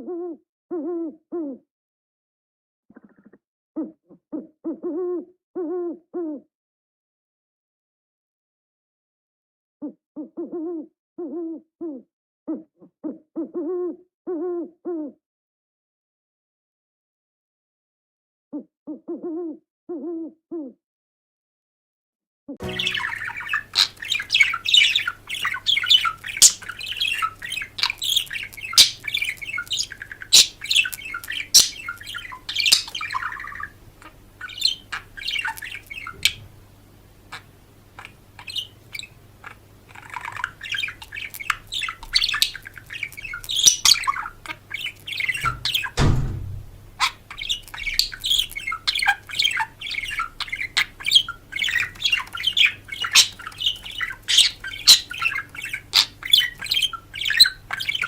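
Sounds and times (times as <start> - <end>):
birds chirping and squawking: 22.6 - 58.0
low thump: 45.5 - 47.0.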